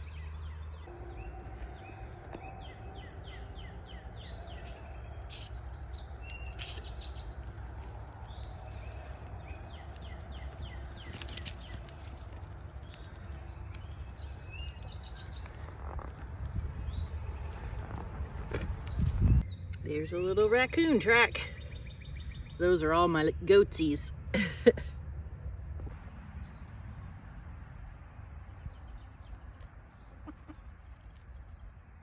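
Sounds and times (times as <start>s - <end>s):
steady low rumble: 0.0s - 20.6s, 23.2s - 30.2s
songbirds singing: 0.0s - 27.5s, 28.4s - 32.0s.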